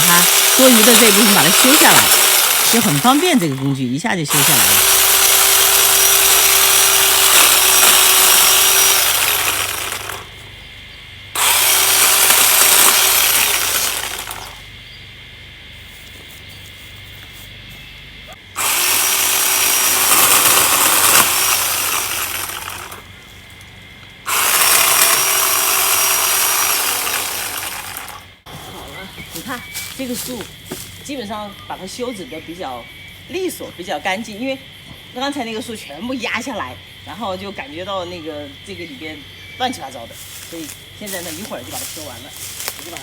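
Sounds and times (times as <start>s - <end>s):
electric pole tree trimmer running: 0.0s - 10.6s, 11.3s - 14.7s, 18.5s - 23.3s, 24.3s - 28.6s, 40.2s - 43.0s.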